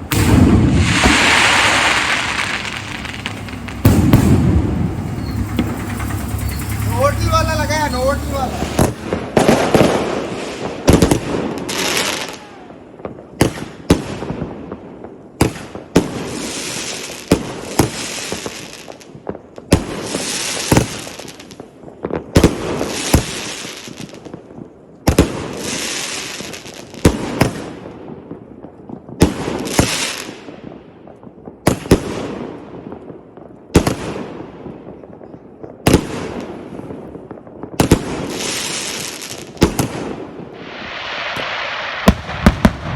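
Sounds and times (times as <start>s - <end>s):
fireworks banging: 0.0s - 30.5s, 35.9s - 42.9s
fireworks crackling and hissing: 0.0s - 42.9s.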